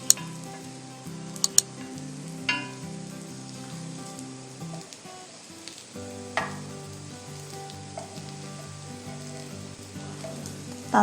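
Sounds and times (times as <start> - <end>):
food sizzling in a pan: 0.0 - 11.0
spatula clinking against pan: 7.9 - 10.5.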